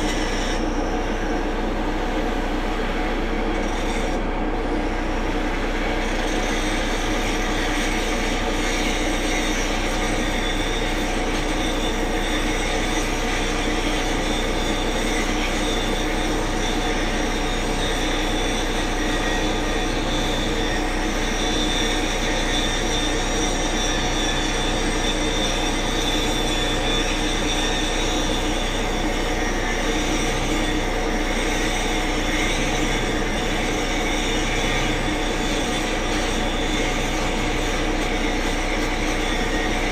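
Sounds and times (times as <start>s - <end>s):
machine whine over low drone: 0.0s - 39.9s.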